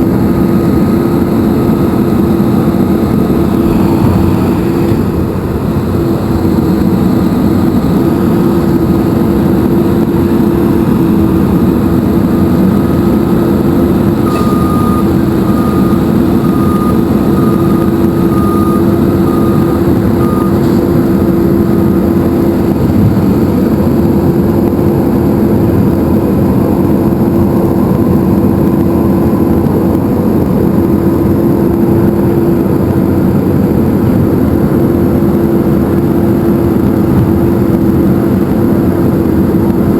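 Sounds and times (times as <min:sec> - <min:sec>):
heavy truck machinery drone: 0:00.0 - 0:39.9
faint high beeping: 0:14.2 - 0:20.6.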